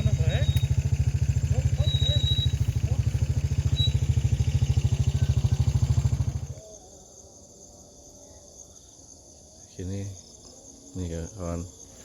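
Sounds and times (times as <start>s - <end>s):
motorcycle engine idling: 0.0s - 6.6s
crickets chirping faintly: 0.0s - 12.0s.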